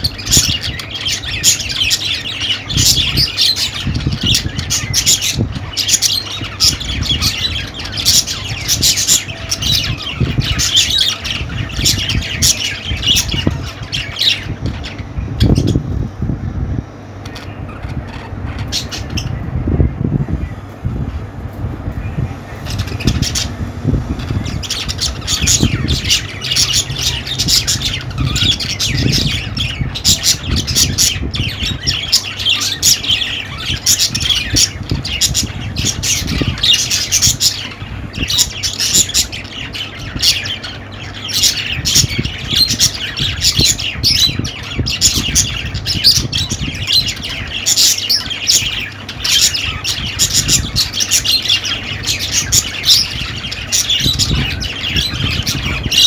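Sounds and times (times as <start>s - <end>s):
budgerigars chattering: 0.0s - 15.9s, 17.1s - 19.5s, 22.0s - 56.0s
low steady hum: 0.0s - 56.0s.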